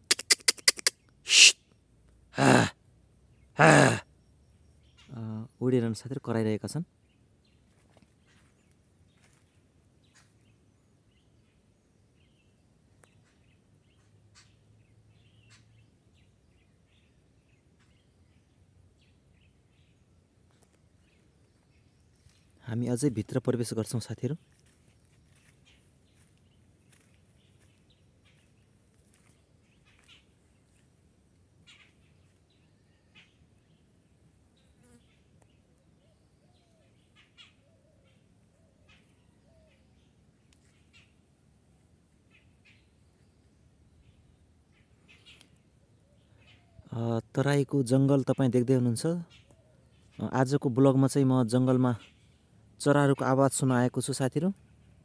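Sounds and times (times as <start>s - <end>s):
high bird chirps: 0.0s - 1.5s
faint forest bird calls: 0.0s - 55.0s.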